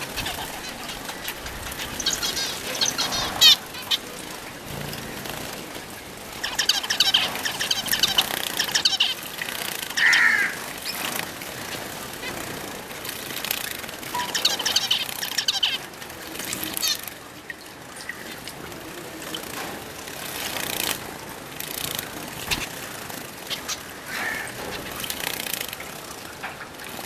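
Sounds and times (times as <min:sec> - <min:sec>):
finches chirping: 0:00.0 - 0:05.0, 0:06.4 - 0:09.2, 0:14.1 - 0:17.1
birds fluttering and splashing: 0:00.0 - 0:27.0.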